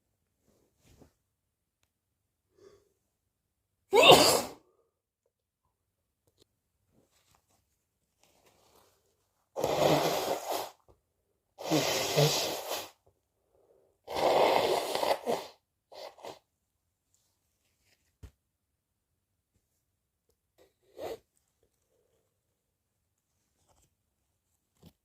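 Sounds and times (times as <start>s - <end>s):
person sneezing: 3.9s - 4.7s, 11.6s - 13.0s.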